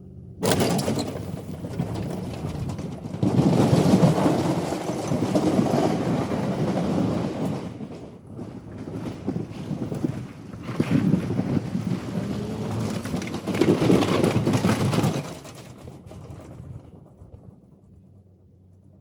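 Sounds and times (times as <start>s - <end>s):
car engine rumbling: 0.0s - 15.0s
wind buffeting microphone: 1.5s - 17.6s.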